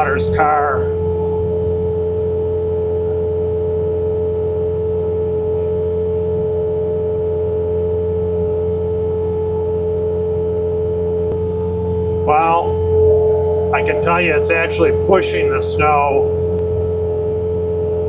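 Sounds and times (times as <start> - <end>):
snowblower high whine: 0.0 - 17.5
loader engine drone: 10.9 - 16.9.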